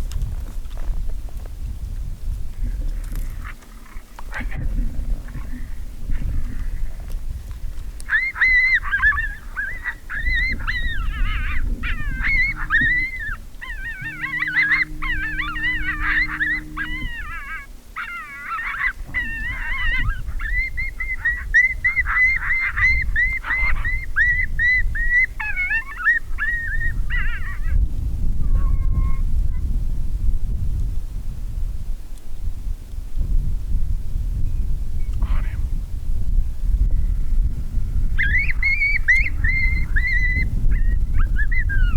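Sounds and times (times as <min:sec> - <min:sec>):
coyotes yipping and howling: 0:08.0 - 0:29.3, 0:35.2 - 0:35.6, 0:36.9 - 0:41.9.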